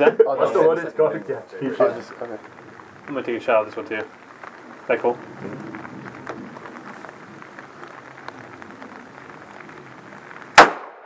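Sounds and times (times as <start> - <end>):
pistol shot: 10.6 - 11.0.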